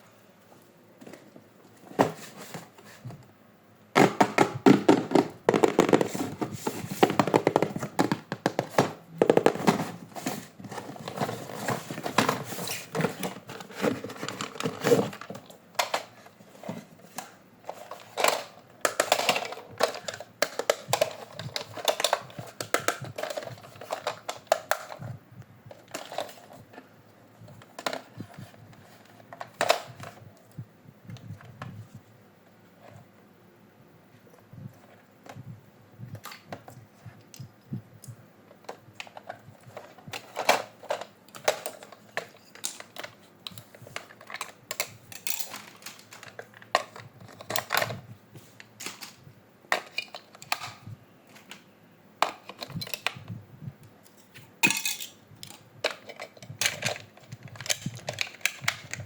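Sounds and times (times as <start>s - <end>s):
packaging rustling: 4.0s - 25.0s.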